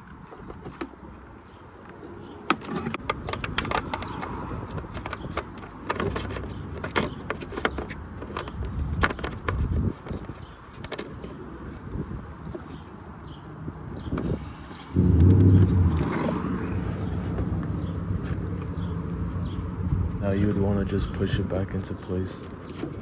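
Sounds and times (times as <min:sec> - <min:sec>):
low rumble: 0:14.9 - 0:21.7.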